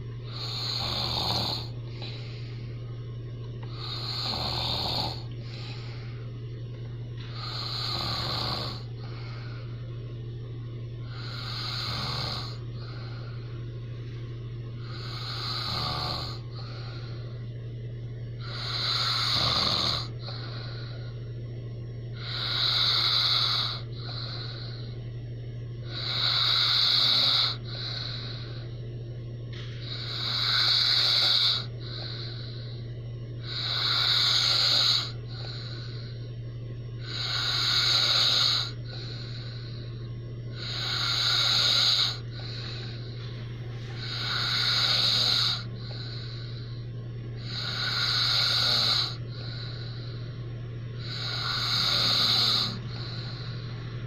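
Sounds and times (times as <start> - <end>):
man snoring heavily: 0.0 - 2.4, 3.6 - 6.0, 7.2 - 9.8, 11.0 - 13.4, 14.8 - 17.4, 18.4 - 21.2, 22.1 - 25.0, 25.8 - 28.7, 29.8 - 32.8, 33.4 - 36.2, 37.0 - 50.3, 51.0 - 54.0
soft breath: 1.6 - 2.9, 5.2 - 6.4, 7.2 - 10.0, 16.3 - 17.5, 20.0 - 21.3, 22.2 - 25.1, 27.4 - 29.0, 29.6 - 32.9, 33.5 - 36.4, 38.6 - 48.0, 48.6 - 54.0.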